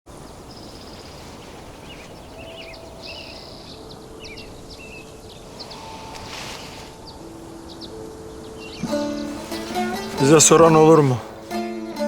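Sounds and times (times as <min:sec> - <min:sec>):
birds chirping: 0:00.1 - 0:11.5
steady outdoor hiss: 0:00.1 - 0:12.0.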